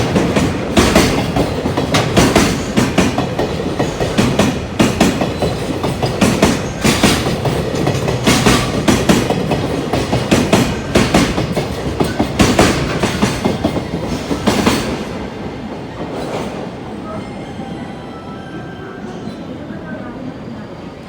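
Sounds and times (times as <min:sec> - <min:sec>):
train wheels clacking: 0:00.0 - 0:16.8
train rumble: 0:00.0 - 0:17.4.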